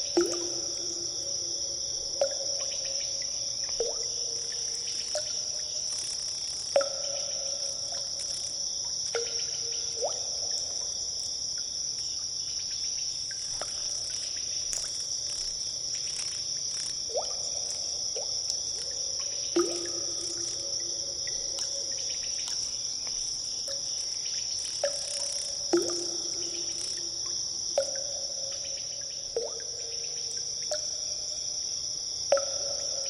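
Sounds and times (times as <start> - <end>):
water drops plinking into pool: 0.0 - 12.2, 13.3 - 15.6, 16.7 - 31.4, 32.3 - 33.0
high-pitched insect-like hiss: 12.0 - 18.0.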